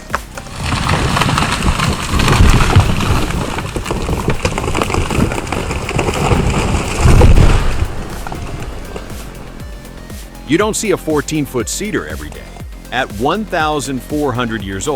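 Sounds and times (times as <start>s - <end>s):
chainsaw cutting wood: 0.0s - 10.5s.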